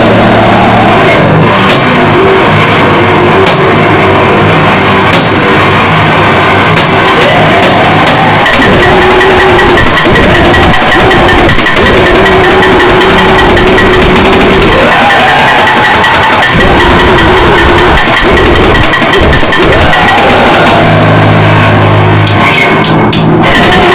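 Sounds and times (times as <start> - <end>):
steady high tone: 0.0 - 22.4
harsh distorted noise music: 0.0 - 23.9.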